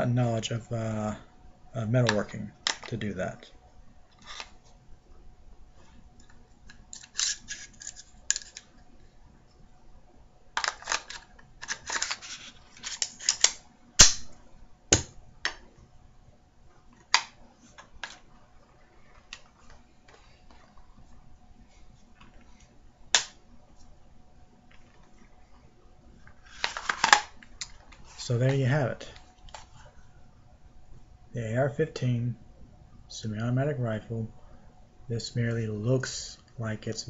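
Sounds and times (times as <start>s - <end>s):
metal clicks and rattles of rifle parts: 6.6s - 8.7s, 10.6s - 14.1s, 26.5s - 28.1s.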